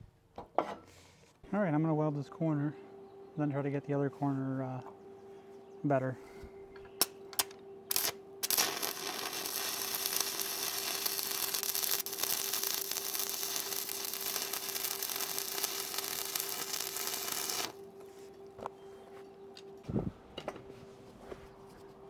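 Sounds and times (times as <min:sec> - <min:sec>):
welding arc crackling sizzle: 0:07.0 - 0:17.8.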